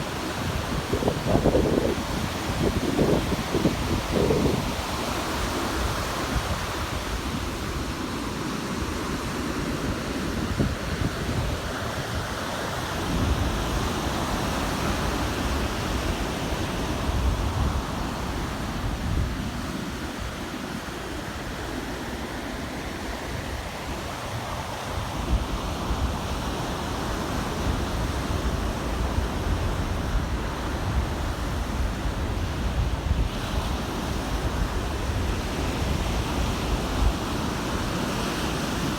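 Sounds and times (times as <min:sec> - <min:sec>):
wind buffeting microphone: 0:00.0 - 0:20.5
ocean surf on sandy beach: 0:00.0 - 0:38.9.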